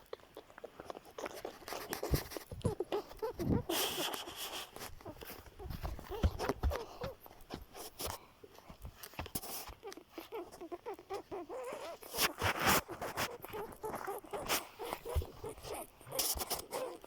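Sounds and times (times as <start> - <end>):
rustling: 0.0 - 17.0
footsteps: 3.7 - 8.2.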